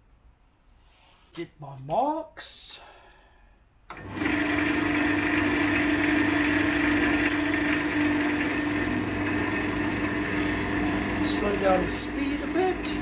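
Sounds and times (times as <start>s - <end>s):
wood lathe motor hum: 3.9s - 13.0s.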